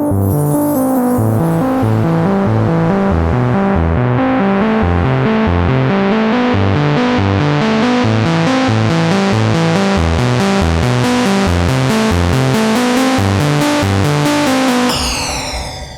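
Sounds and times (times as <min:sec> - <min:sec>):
synth bass line: 0:00.0 - 0:07.2, 0:11.3 - 0:15.9
plucked synth notes: 0:00.2 - 0:06.4.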